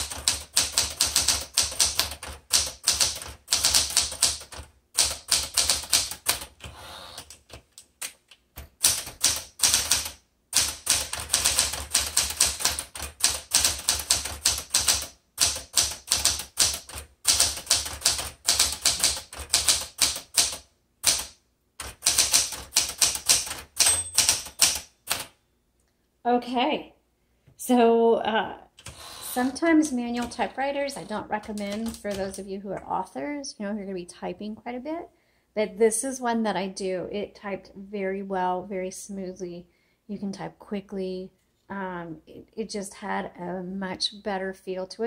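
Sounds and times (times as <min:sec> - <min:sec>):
manual typewriter typing: 0:00.0 - 0:25.3, 0:28.8 - 0:32.4.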